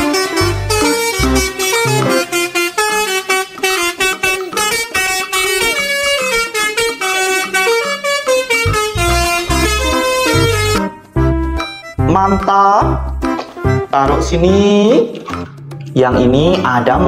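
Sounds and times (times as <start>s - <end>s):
musical bus horn tune: 0.0s - 12.5s.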